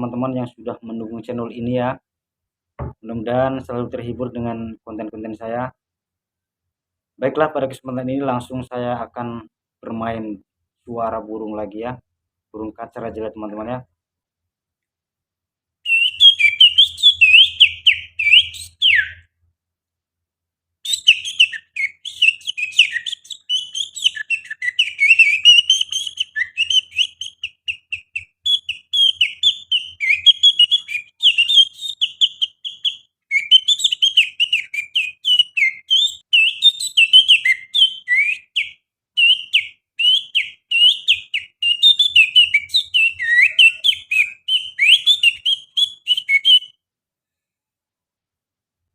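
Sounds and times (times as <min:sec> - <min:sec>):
man whistling birdsong imitation: 0:15.8 - 0:19.4, 0:20.8 - 0:46.8.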